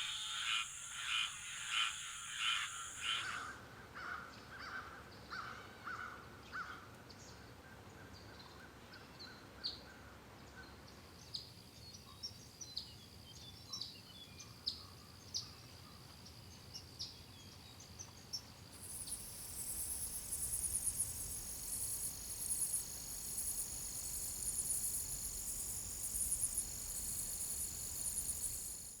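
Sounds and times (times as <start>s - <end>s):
steady high whine: 0.0s - 3.5s
frogs croaking: 0.0s - 3.6s, 18.8s - 29.0s
pulsing insect chorus: 0.0s - 3.6s, 18.8s - 29.0s.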